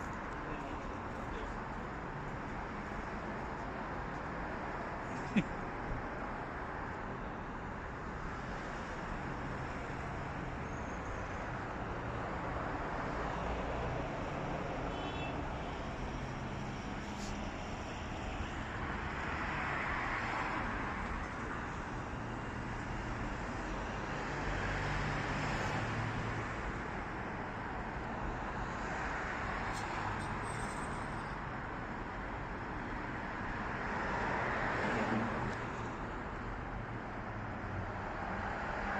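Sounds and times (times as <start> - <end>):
steady traffic hum: 0.0 - 38.9
vehicles passing: 0.0 - 38.9.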